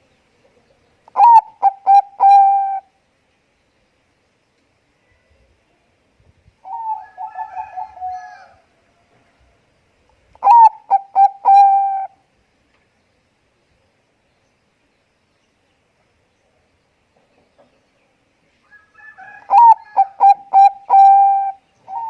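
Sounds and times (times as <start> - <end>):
dove cooing: 0.5 - 2.9, 6.6 - 8.6, 10.4 - 12.2, 19.3 - 22.0.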